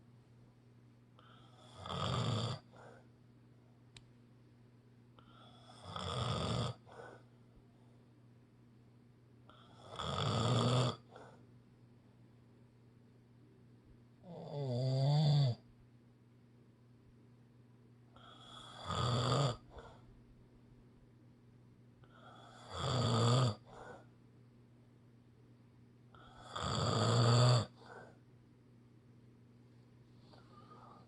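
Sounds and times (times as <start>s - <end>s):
person snoring: 1.2s - 3.0s, 5.2s - 7.2s, 9.5s - 11.4s, 14.2s - 15.6s, 18.2s - 20.0s, 22.0s - 24.0s, 26.2s - 28.2s.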